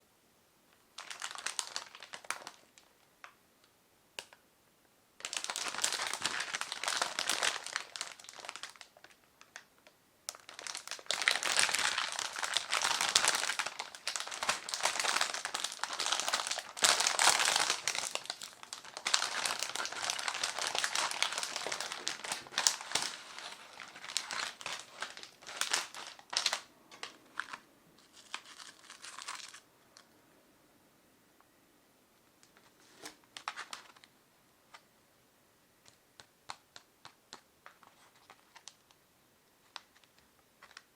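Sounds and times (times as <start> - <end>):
plastic packaging crinkling: 0.9 - 2.9, 5.2 - 30.1, 32.6 - 34.1, 37.6 - 38.9, 39.6 - 40.9
packaging crackles: 1.0 - 2.9, 5.2 - 9.7, 10.3 - 30.1, 32.8 - 34.1, 37.6 - 38.9, 39.6 - 40.9.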